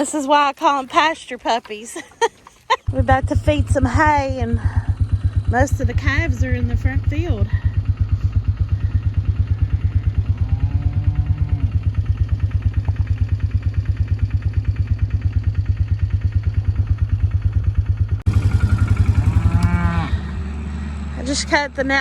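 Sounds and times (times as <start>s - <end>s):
engine idling: 2.8s - 22.0s
calf mooing: 10.3s - 11.8s, 19.2s - 20.3s.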